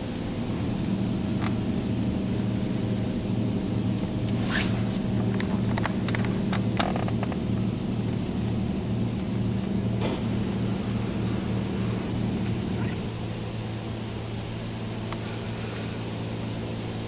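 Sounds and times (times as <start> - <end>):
pulsing car wash machinery hum: 0.0 - 17.0
short swish: 4.3 - 5.1.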